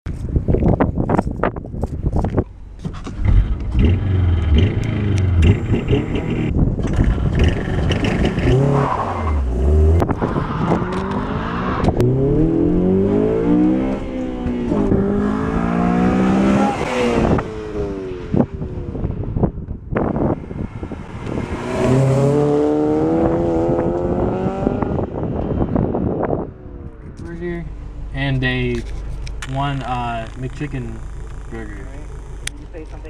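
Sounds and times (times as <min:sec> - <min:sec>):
car engine accelerating hard: 0:03.1 - 0:19.4, 0:20.2 - 0:26.9.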